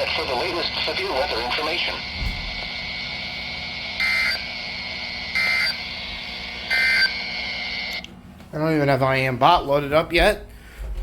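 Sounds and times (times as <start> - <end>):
radio hiss: 0.0 - 8.1
warbling digital data tones: 4.0 - 4.7, 5.3 - 6.0, 6.7 - 8.0.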